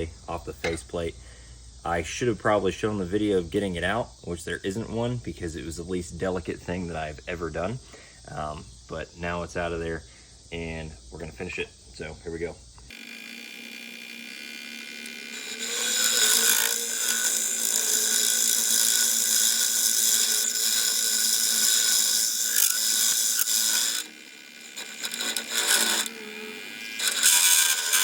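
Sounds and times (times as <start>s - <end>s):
turning tool scraping wood: 12.9s - 28.0s
wood lathe motor hum: 12.9s - 28.0s.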